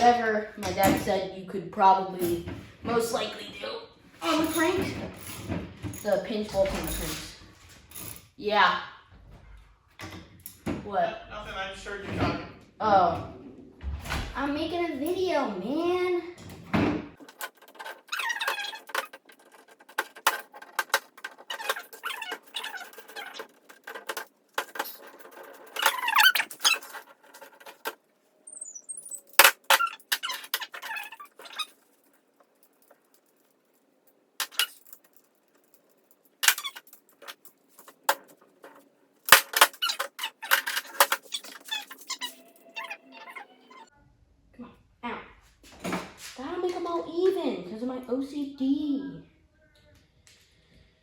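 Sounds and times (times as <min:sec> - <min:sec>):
metal tool clicking and squeaking: 0:17.2 - 0:32.1, 0:34.4 - 0:35.7, 0:36.4 - 0:38.3, 0:39.3 - 0:43.9.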